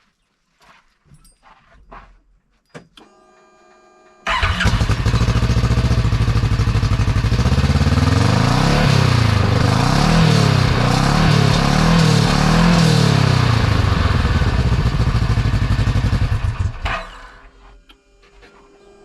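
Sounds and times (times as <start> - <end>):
engine starting and revving: 4.2 - 17.5.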